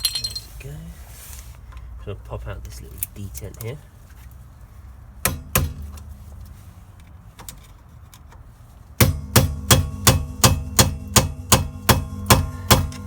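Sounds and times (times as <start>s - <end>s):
hammer blows on steel: 9.0s - 13.0s.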